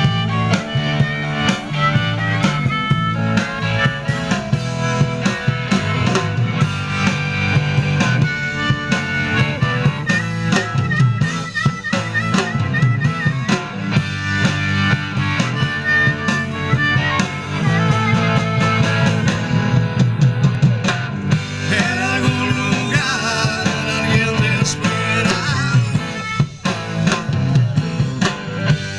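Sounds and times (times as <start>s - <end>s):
drum kit beat: 0.0s - 28.9s
rock band playing: 0.0s - 28.9s
wavering lead melody: 0.0s - 28.9s.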